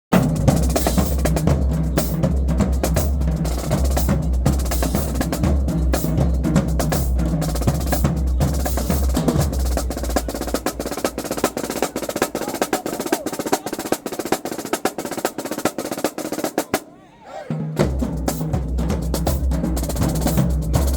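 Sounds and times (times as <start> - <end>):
bass drums: 0.1 - 13.2, 17.8 - 20.9
snare drums playing fast: 0.1 - 20.9.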